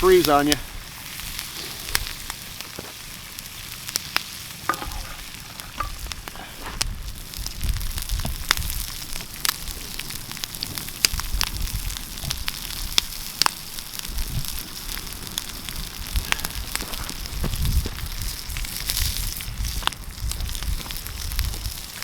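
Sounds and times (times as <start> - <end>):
campfire crackling and popping: 0.0 - 22.0
eggs sizzling in a pan: 0.0 - 22.0.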